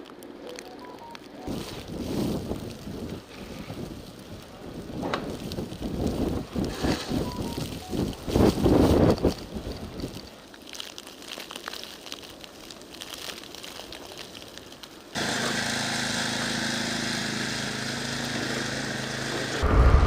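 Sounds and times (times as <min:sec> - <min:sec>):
engine running steadily: 0:15.2 - 0:20.0.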